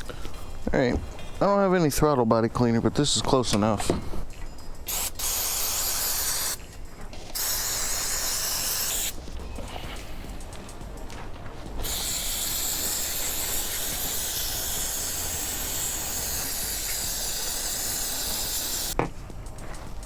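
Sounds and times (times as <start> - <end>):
aerosol spray can hissing: 4.8 - 10.6, 11.7 - 19.0
spray can click: 4.9 - 6.7, 7.3 - 9.2, 11.8 - 19.0.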